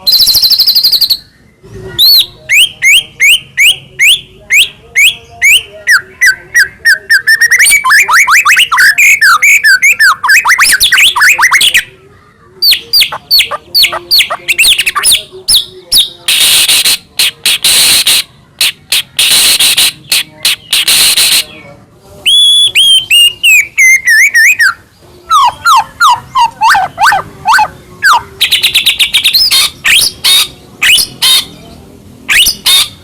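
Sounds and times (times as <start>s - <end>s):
bird whistles: 32.3s - 33.0s.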